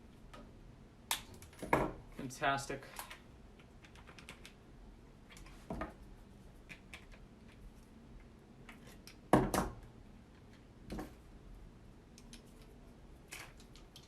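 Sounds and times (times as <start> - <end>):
light clicks of small parts: 12.1 - 14.0.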